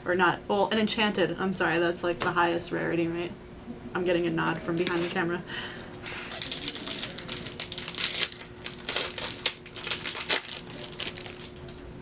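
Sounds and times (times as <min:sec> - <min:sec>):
foil wrapper crinkling: 0:05.9 - 0:11.9.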